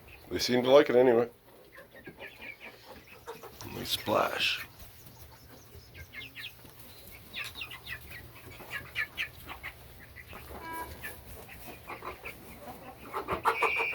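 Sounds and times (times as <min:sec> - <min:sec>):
chickens clucking: 0:00.0 - 0:13.9
chicken long call: 0:12.1 - 0:13.9.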